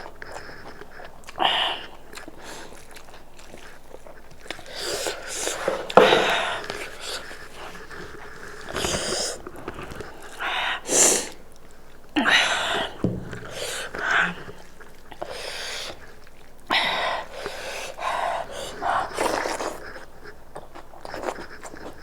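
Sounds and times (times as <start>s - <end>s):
person slurping soup: 1.5s - 11.4s, 12.6s - 16.2s
person sniffing and breathing: 4.6s - 11.4s.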